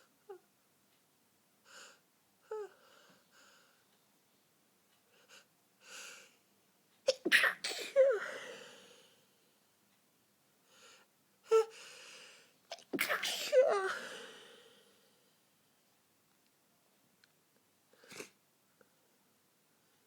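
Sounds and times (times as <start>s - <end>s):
person stifling sneezes: 7.1s - 8.8s, 12.7s - 14.6s.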